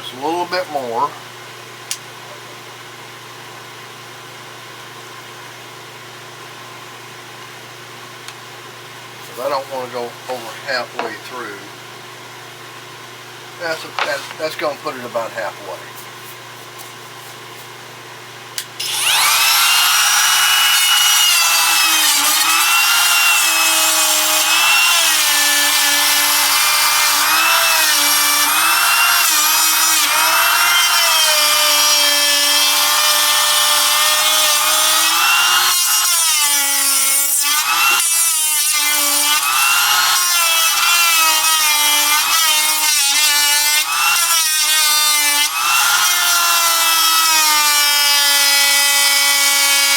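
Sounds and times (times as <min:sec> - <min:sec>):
power saw cutting wood: 0:13.6 - 0:15.8, 0:18.8 - 0:49.9.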